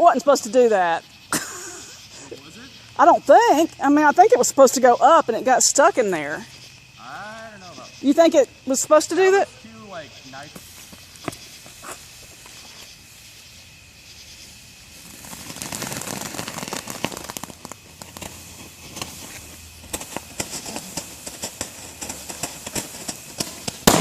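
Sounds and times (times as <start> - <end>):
firework crackles and pops: 0.0 - 24.0
firework hiss: 0.0 - 24.0.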